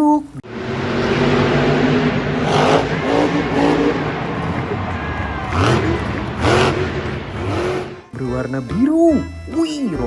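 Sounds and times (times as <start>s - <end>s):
monster truck engine revving: 0.4s - 8.1s.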